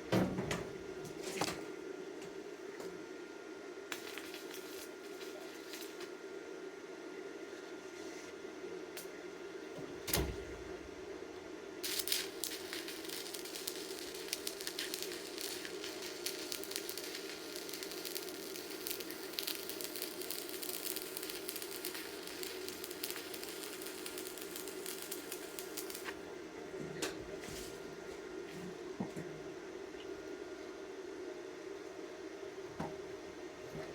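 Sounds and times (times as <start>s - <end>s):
welding arc crackling: 3.9s - 6.1s, 11.8s - 26.2s.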